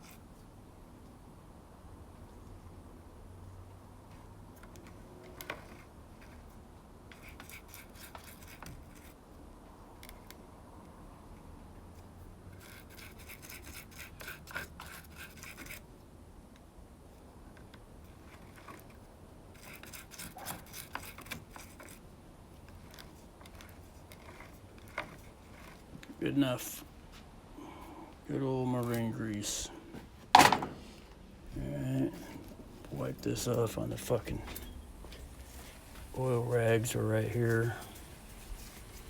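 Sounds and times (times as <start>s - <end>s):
grease rubbing and scraping: 22.8s - 26.8s, 35.1s - 39.0s.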